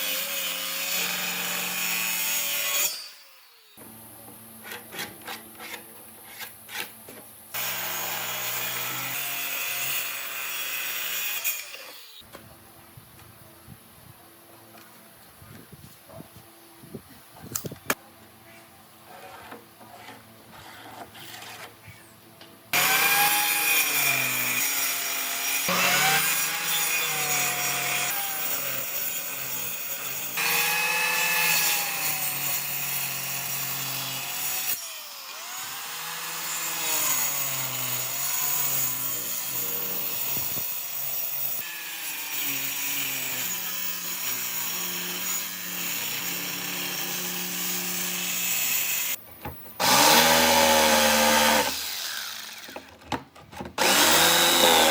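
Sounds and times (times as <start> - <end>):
power tool cutting wood: 0.0 - 3.9, 7.6 - 12.2, 22.7 - 49.2, 49.8 - 52.9, 53.8 - 54.9.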